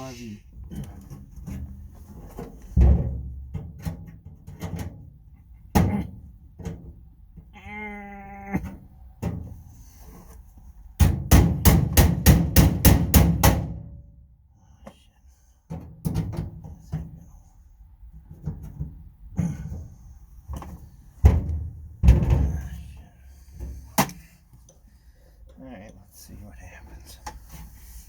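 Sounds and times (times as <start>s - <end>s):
metal knocks and clanks: 0.6s - 7.0s, 18.2s - 22.9s
heavy metal strikes: 11.0s - 14.0s.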